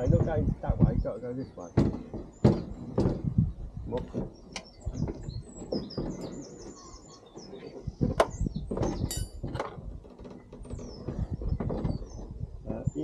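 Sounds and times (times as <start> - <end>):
small birds chirping: 0.0 - 13.0
car door knocking and clanking: 1.8 - 3.4.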